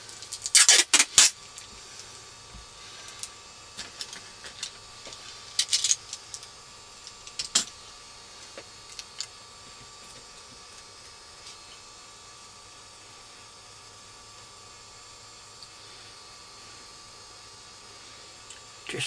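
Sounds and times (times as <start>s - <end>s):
sticky tape crackling: 0.1s - 1.7s.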